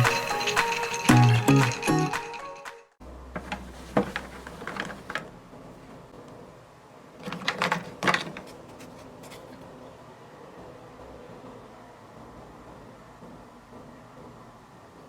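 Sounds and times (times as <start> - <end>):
kitchen items clicking and clattering: 3.4 - 5.4, 7.2 - 9.7.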